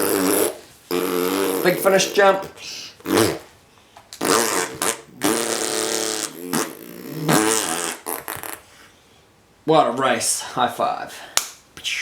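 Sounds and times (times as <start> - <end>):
person imitating engine revving: 4.2 - 8.6.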